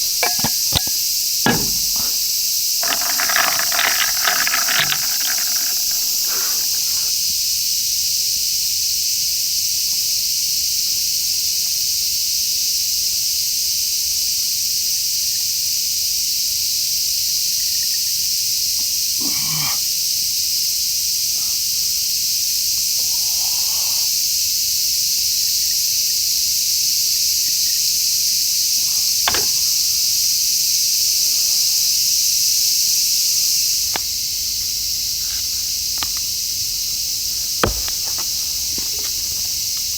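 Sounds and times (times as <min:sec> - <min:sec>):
knocks and clatters: 0:00.2 - 0:07.1
high-pitched insect chorus: 0:20.5 - 0:24.8, 0:26.6 - 0:39.9.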